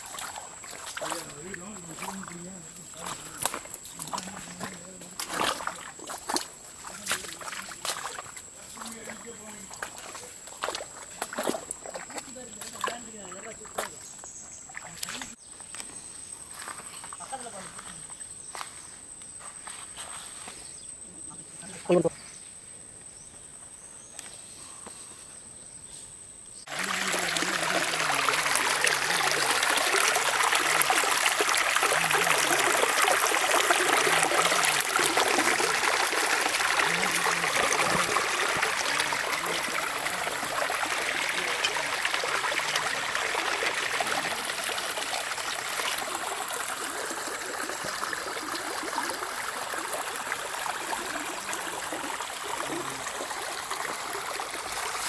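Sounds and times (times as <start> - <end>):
water rushing over rocks: 0.0 - 8.1, 26.7 - 55.0.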